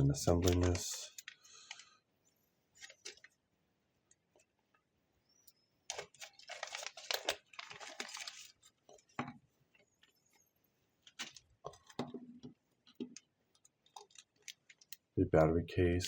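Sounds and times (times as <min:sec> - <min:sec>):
packaging rustling: 0:00.2 - 0:01.9, 0:02.8 - 0:03.4, 0:05.9 - 0:09.2, 0:11.0 - 0:12.1, 0:12.9 - 0:15.0
small hard pieces clicking: 0:12.8 - 0:15.1.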